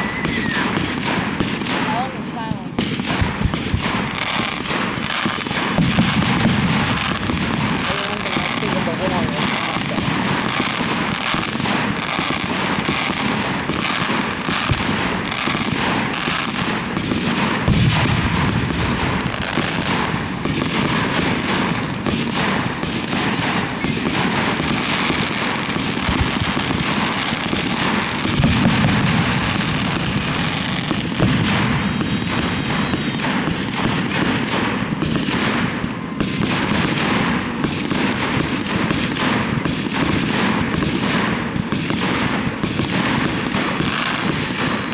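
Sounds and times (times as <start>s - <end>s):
fireworks bangs rumbling: 0.0s - 44.9s
fireworks crackling and popping: 0.0s - 44.9s
heavy fireworks booms: 0.0s - 44.9s
high whistling tone: 5.0s - 6.0s, 31.8s - 33.2s, 43.6s - 44.9s.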